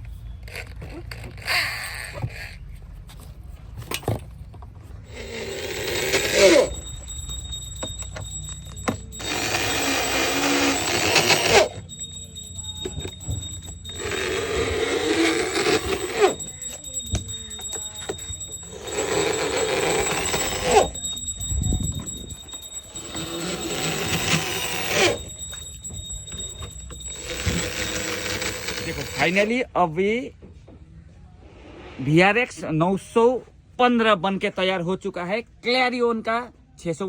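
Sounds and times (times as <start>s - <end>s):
power drill running: 5.1s - 7.1s, 7.8s - 11.9s, 22.4s - 25.6s, 26.3s - 29.5s.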